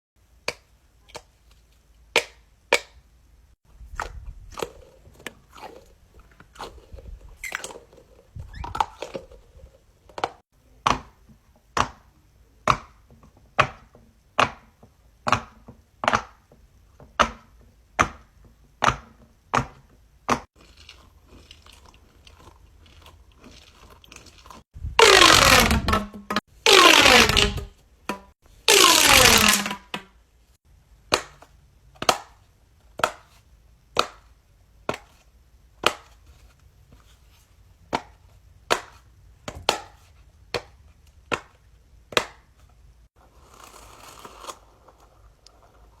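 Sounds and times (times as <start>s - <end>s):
rustling and handling: 20.5s - 27.8s, 36.0s - 41.2s.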